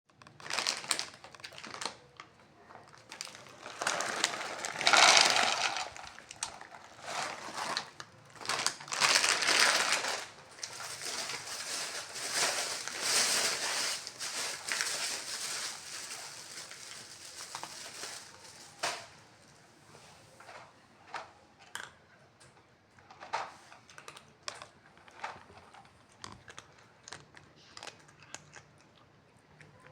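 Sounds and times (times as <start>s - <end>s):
cat crunching and chewing: 0.1s - 18.8s, 21.6s - 29.9s.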